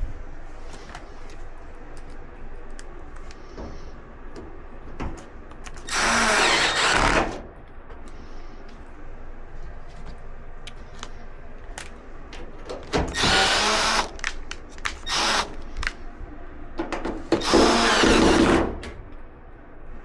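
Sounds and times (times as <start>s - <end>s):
parts clicking and knocking: 0.7s - 8.2s, 10.6s - 16.0s
power drill running: 5.6s - 7.4s, 13.0s - 16.0s, 17.3s - 18.9s.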